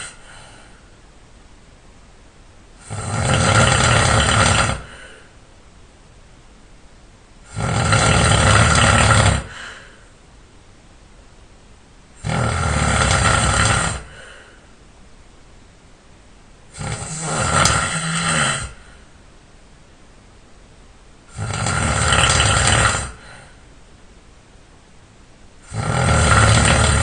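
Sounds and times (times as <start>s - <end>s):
person snoring loudly: 0.0s - 0.2s, 2.8s - 5.2s, 7.4s - 9.9s, 12.2s - 14.4s, 16.7s - 19.0s, 21.3s - 23.6s, 25.6s - 27.0s.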